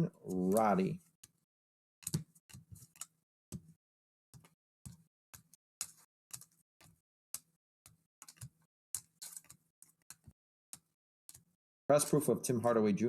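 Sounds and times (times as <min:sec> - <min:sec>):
cards flicking and tapping: 0:00.3 - 0:01.4, 0:02.0 - 0:03.8, 0:04.4 - 0:12.3.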